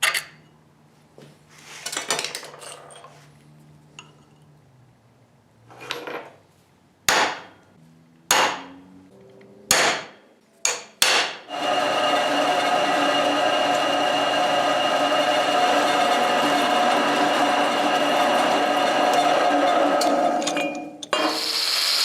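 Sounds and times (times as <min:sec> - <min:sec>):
power tool running: 0:11.5 - 0:20.5.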